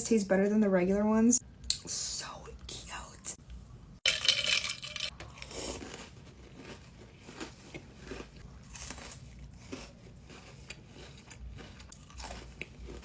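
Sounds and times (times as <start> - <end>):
cookie chewing crunches: 5.1 - 13.0.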